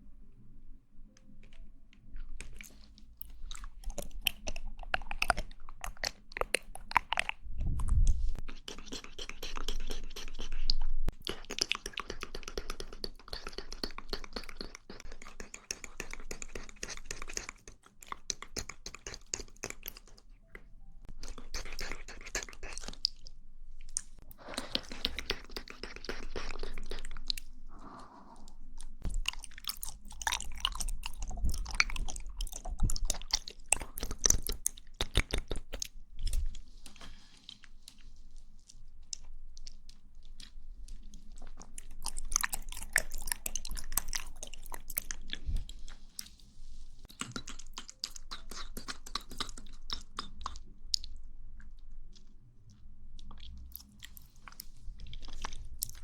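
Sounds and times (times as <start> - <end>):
wet chewing with smacking: 1.4 - 56.0.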